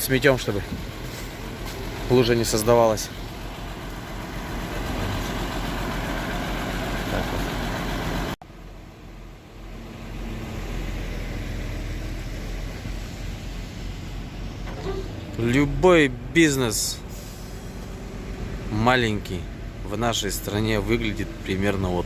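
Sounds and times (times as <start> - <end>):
truck diesel engine droning: 0.0 - 22.0.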